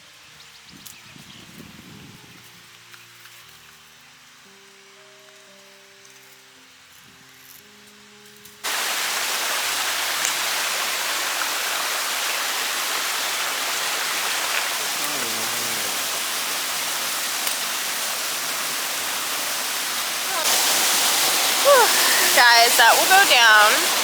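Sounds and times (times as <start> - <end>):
quiet background music: 0.1 - 8.7
waterfall rushing: 8.6 - 24.0.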